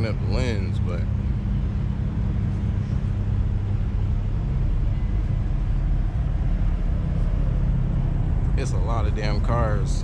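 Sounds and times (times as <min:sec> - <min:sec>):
car engines idling: 0:00.0 - 0:10.0.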